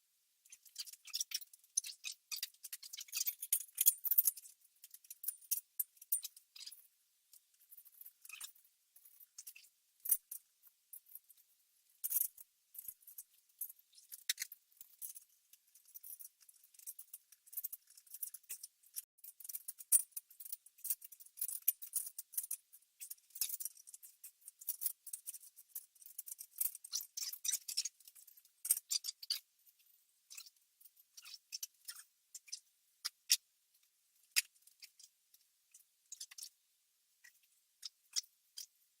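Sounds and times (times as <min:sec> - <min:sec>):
metallic clicks of tools and bolts: 0:00.5 - 0:11.4, 0:12.0 - 0:29.4.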